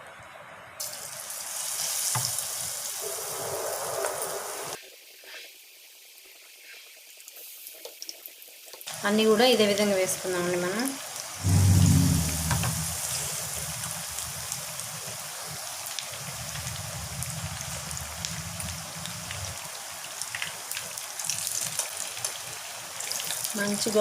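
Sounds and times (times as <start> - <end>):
bread sizzling in hot oil: 0.8 - 11.4, 13.1 - 24.0
low hum: 11.4 - 14.0.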